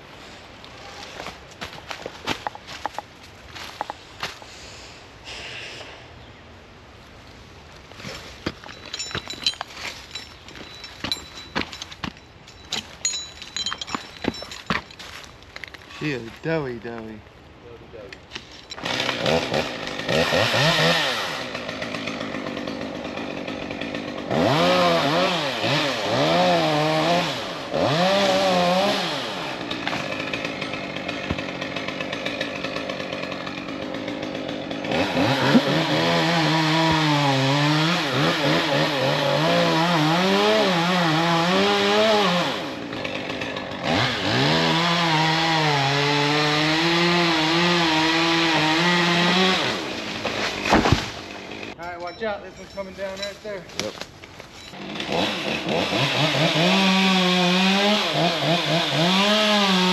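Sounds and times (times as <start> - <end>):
chainsaw cutting wood: 7.9 - 17.1, 18.2 - 51.8, 53.7 - 59.9.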